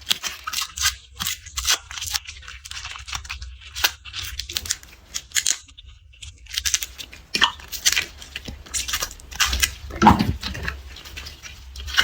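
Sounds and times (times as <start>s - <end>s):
garlic skin crackling: 4.2s - 5.6s, 6.4s - 12.0s.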